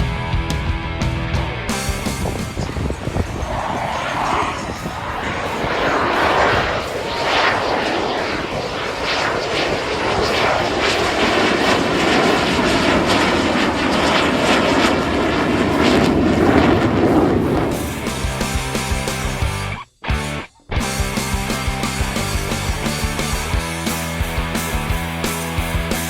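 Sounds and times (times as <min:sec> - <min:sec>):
jet fighters flying over: 0:01.0 - 0:19.6.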